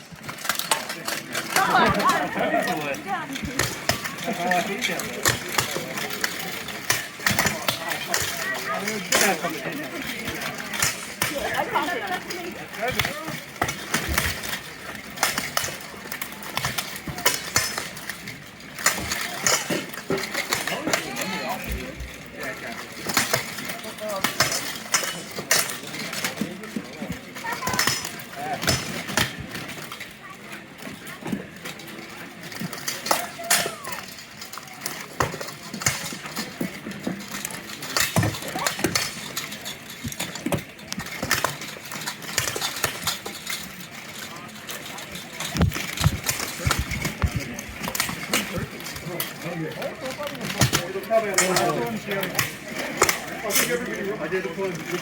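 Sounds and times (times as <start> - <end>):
steel weapons clanking: 0.2 - 30.0, 30.9 - 55.0.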